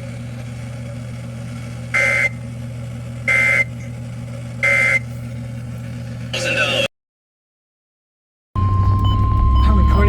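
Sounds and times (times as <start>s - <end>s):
steady low hum: 0.0s - 6.9s, 8.6s - 10.0s
digital data tone squawks: 2.0s - 2.4s, 3.3s - 3.7s, 4.6s - 5.0s.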